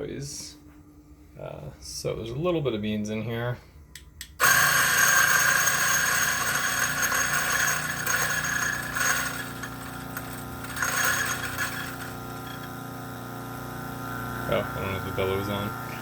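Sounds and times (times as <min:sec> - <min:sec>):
coffee grinder whirring: 0:04.4 - 0:16.0.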